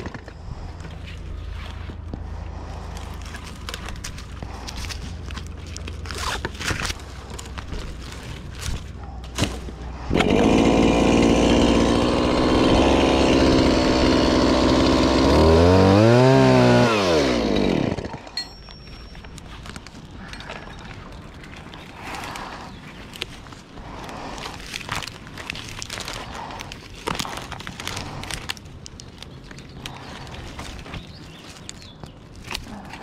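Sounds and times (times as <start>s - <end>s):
chainsaw cutting a tree limb: 9.3s - 18.4s.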